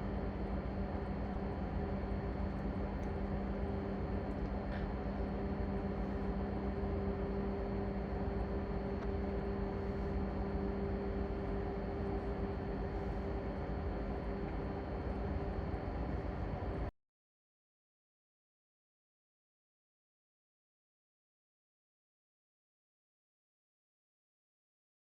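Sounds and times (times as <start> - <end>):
engine room machinery drone: 0.0 - 16.9.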